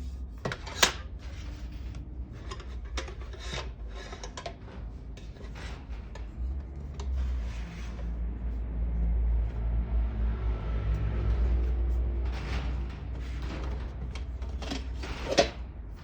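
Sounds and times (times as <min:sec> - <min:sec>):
low rumble: 0:04.6 - 0:16.0.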